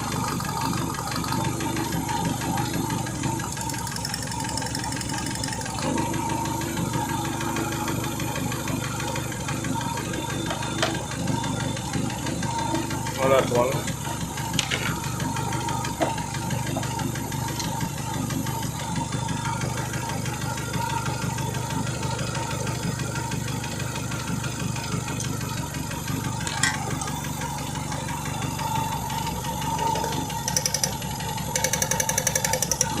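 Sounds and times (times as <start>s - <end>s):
car engine idling with misfire: 0.0s - 33.0s
rapid even ticking: 30.4s - 33.0s.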